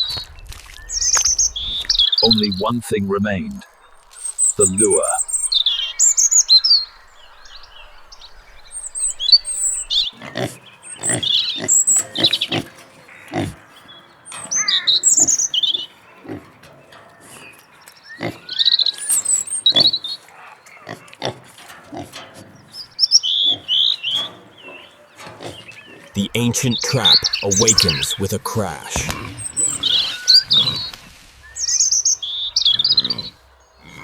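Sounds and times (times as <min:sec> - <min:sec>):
birds chirping: 0:00.0 - 0:21.0, 0:21.6 - 0:34.0
wild boar grunting: 0:09.6 - 0:13.9, 0:24.5 - 0:31.5, 0:32.7 - 0:34.0.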